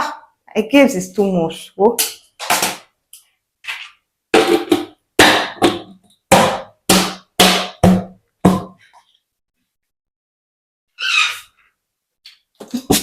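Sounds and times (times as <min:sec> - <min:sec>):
pitched drum hits: 0:04.4 - 0:08.6.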